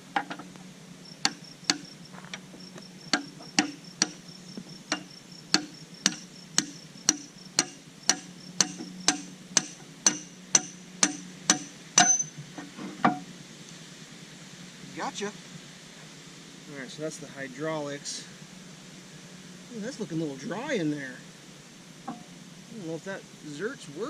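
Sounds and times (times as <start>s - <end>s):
crickets chirping: 0.0s - 24.0s
hammer striking metal: 1.2s - 1.9s, 3.1s - 4.3s, 4.9s - 12.4s.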